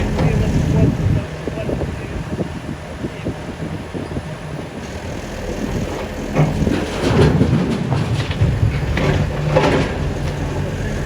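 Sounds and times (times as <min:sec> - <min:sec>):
diesel engine running: 0:00.0 - 0:11.0
debris crunching and crashing: 0:04.8 - 0:11.0.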